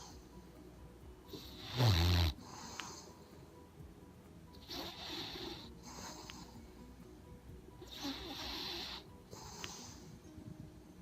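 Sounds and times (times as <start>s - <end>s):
quiet breathing: 0.0s - 11.0s
dog snoring: 1.3s - 3.2s, 4.6s - 6.6s, 7.8s - 10.2s.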